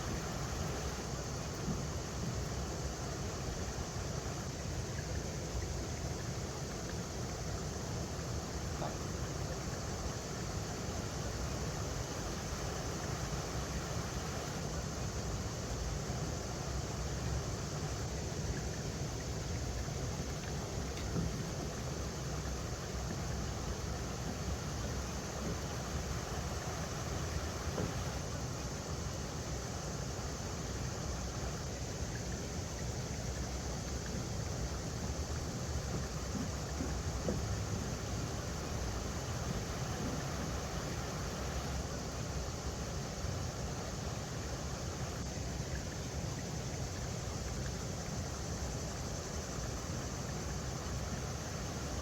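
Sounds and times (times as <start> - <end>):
river flowing over rocks: 0.0 - 52.0.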